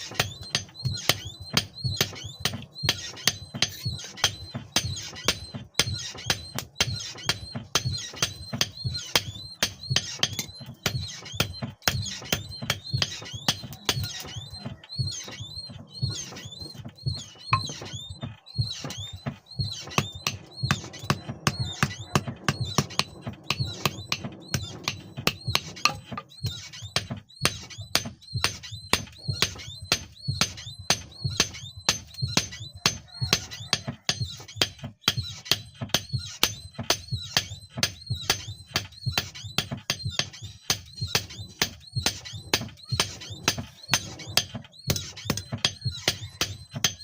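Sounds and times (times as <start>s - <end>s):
hammer striking steel on anvil: 17.5s - 18.0s, 19.8s - 26.4s, 27.0s - 33.8s.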